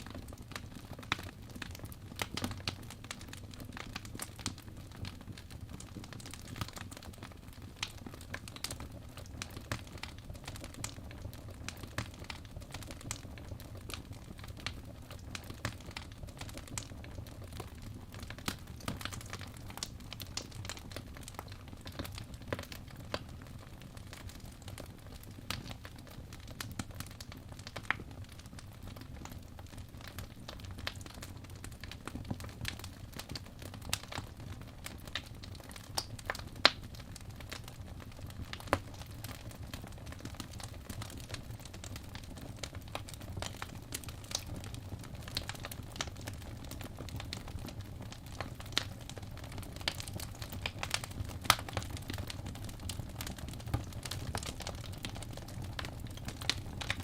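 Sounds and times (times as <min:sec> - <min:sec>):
fire crackling and popping: 0:00.0 - 0:57.0.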